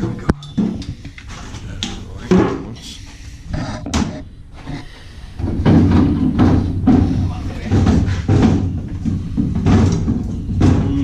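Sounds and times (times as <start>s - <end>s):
metal clanks and knocks: 0.0s - 2.7s, 5.4s - 11.0s.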